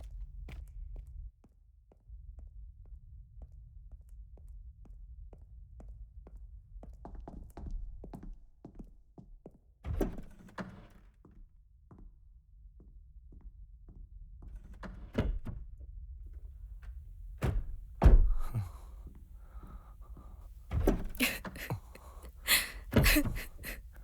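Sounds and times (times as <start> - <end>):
door thudding shut: 17.4 - 18.8
dull knocks and thuds: 17.4 - 18.9, 22.9 - 23.8.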